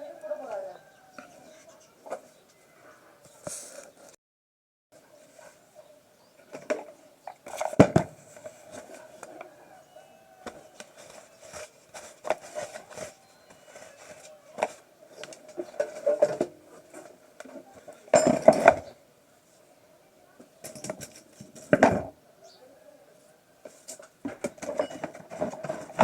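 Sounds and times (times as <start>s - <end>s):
metal tools clinking and knocking: 18.1s - 18.9s, 24.6s - 26.0s.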